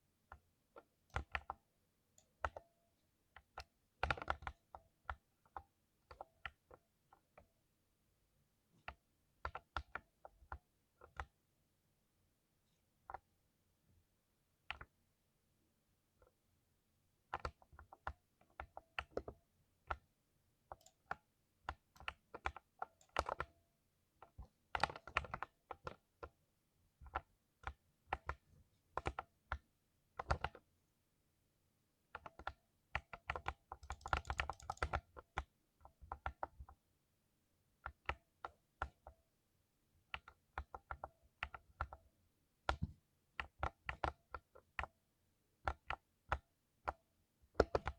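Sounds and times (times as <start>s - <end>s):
mechanical keyboard typing: 3.4s - 5.2s, 24.3s - 26.0s, 30.2s - 30.6s, 32.2s - 36.7s, 43.4s - 44.9s, 47.6s - 47.9s.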